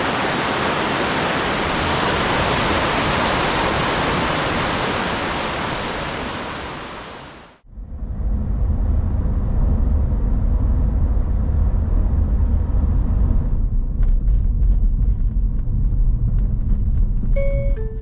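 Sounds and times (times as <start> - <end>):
steady low rumble: 7.6 - 18.0.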